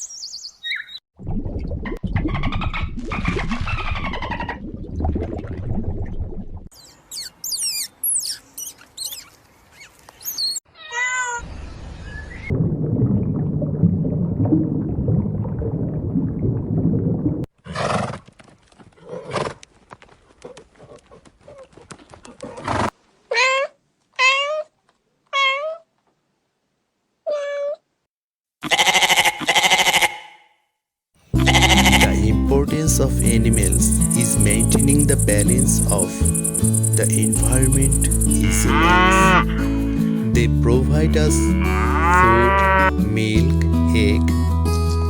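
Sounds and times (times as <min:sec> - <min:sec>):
cat meowing: 0:10.7 - 0:11.4, 0:23.3 - 0:24.7, 0:25.3 - 0:25.9, 0:27.3 - 0:27.8, 0:31.4 - 0:32.1.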